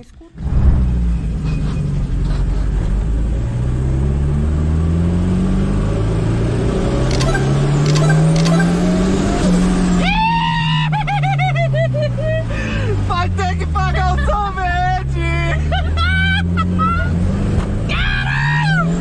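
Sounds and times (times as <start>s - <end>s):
car engine revving: 0.3s - 19.0s
wavering high-pitched sound: 7.1s - 10.0s.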